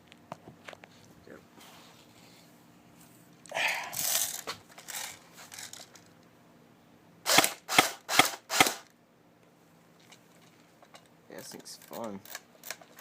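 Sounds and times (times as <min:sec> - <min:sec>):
handling noise rustle: 0:00.0 - 0:03.4, 0:04.0 - 0:06.2
airsoft gun shots: 0:07.3 - 0:08.9.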